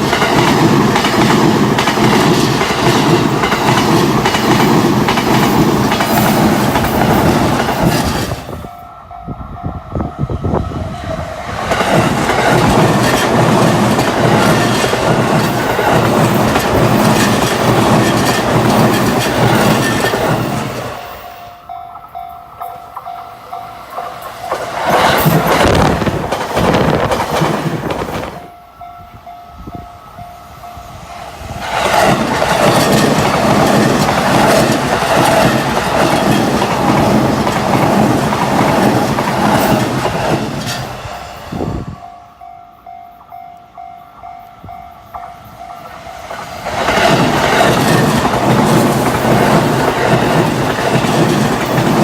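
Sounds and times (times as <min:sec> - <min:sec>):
level-crossing warning bell: 0:00.0 - 0:10.5, 0:12.3 - 0:25.8, 0:28.4 - 0:31.5, 0:40.6 - 0:52.0
electric trains passing: 0:00.0 - 0:52.0
wheels clattering over rail joints: 0:11.6 - 0:21.1, 0:46.4 - 0:52.0.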